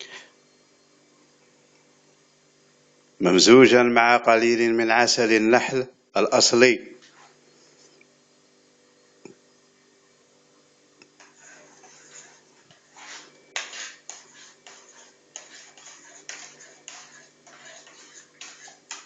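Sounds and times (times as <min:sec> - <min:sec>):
spoon stirring in a glass: 0:11.2 - 0:19.0.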